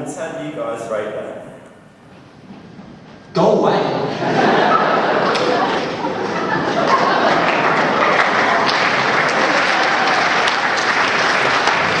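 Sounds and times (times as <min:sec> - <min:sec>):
audience cheering: 0:04.4 - 0:12.0
audience applauding: 0:04.5 - 0:12.0.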